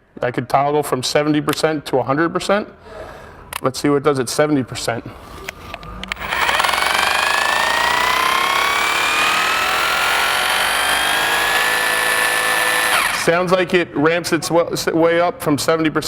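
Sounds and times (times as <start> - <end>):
rotary hammer motor running: 6.1 - 13.3.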